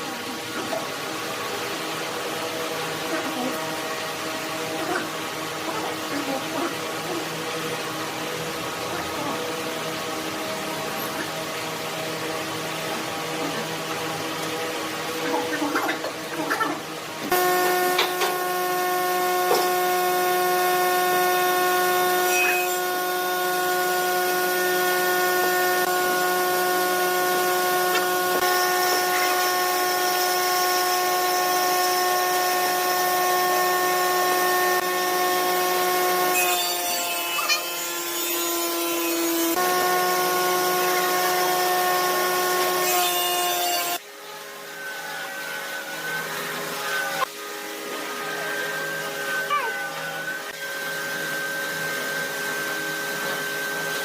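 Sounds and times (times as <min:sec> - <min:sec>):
wood lathe whine: 0:16.8 - 0:54.0.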